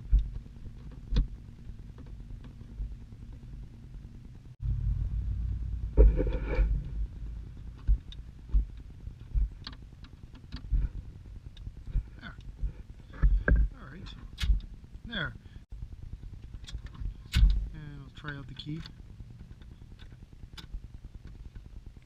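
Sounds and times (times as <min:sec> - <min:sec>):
handling noise rumble: 0:00.0 - 0:15.1.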